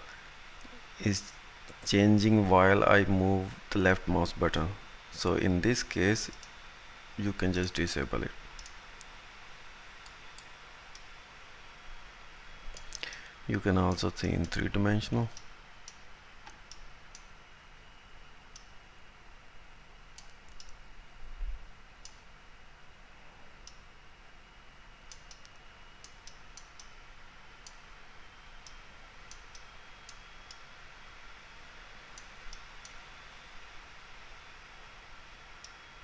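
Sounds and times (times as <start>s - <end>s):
faint hiss and hum: 0.0s - 36.0s
computer mouse clicking: 20.2s - 20.8s, 25.1s - 27.0s.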